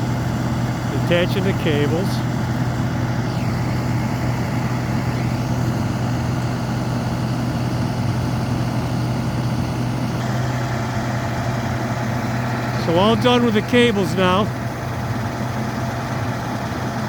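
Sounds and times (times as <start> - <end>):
truck engine idling: 0.0 - 17.0.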